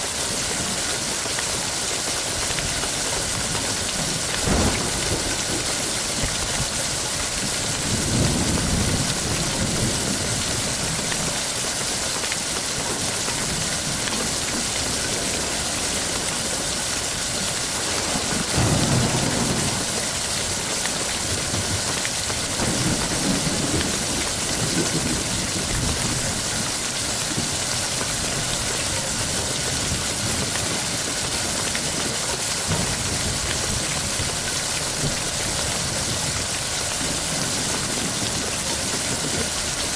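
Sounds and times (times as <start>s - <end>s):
heavy rain: 0.0s - 39.9s
thunder rolling: 4.2s - 9.8s, 17.6s - 20.7s.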